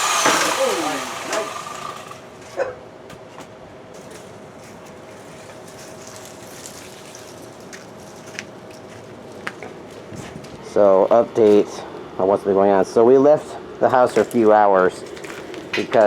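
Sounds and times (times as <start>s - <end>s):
power tool whine: 0.0s - 2.3s.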